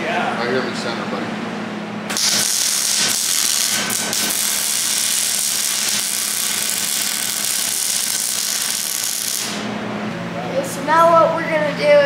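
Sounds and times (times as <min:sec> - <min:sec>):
arc welding crackling hiss: 0:02.1 - 0:09.6.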